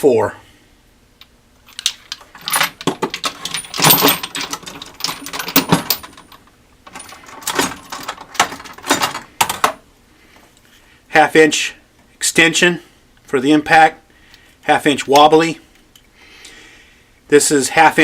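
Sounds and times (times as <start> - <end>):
metal tools clinking and rattling: 1.7 - 9.8.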